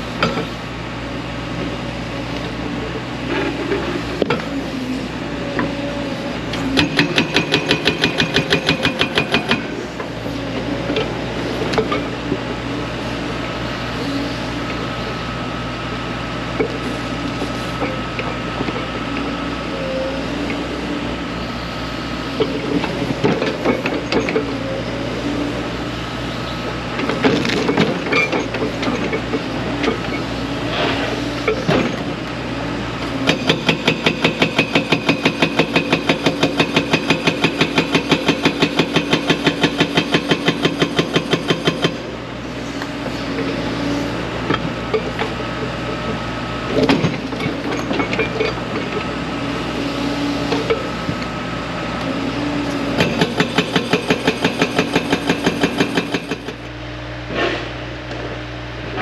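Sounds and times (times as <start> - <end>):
excavator diesel engine running: 0.0 - 59.0
hydraulic breaker hammering: 6.6 - 9.8, 33.2 - 42.1.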